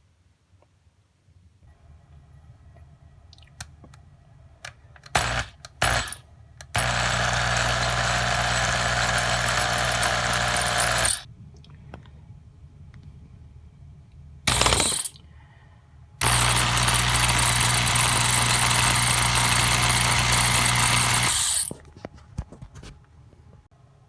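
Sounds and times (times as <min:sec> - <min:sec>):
electric drill drilling: 0:05.2 - 0:06.2, 0:06.8 - 0:11.3, 0:14.5 - 0:15.1, 0:16.2 - 0:21.8.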